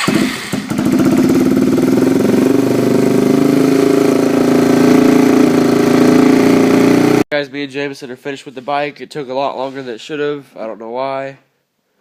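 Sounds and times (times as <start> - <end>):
dirt bike engine idling: 0.0 - 7.2.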